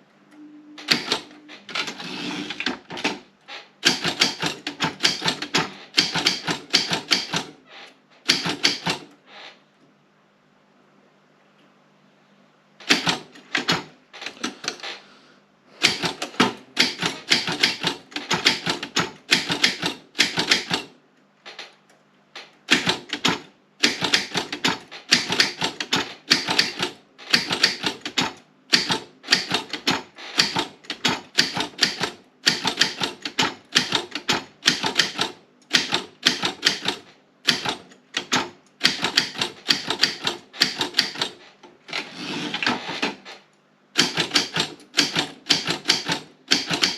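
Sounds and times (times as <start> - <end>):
typewriter typing: 0.8 - 3.2, 3.8 - 7.6, 8.2 - 9.2, 12.8 - 15.0, 15.8 - 21.7, 22.4 - 43.3, 43.9 - 46.9.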